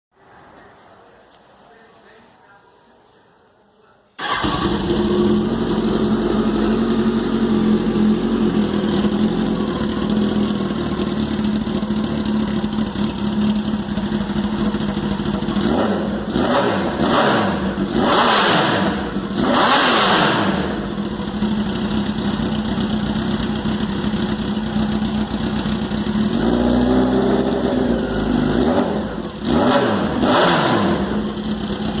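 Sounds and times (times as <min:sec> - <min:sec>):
motorcycle engine idling and revving: 0:04.2 - 0:32.0.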